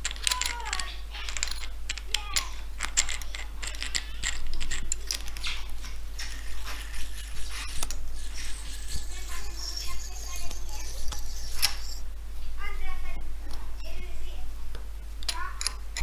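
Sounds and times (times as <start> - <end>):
metal clicking and scraping: 0.0 - 12.0.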